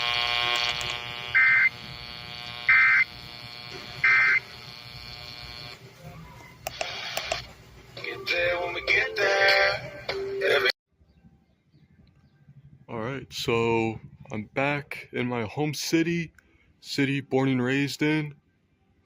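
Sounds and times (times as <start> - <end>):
buzzy alert tone: 0.0 - 5.7
buzzy data bursts: 0.0 - 6.0.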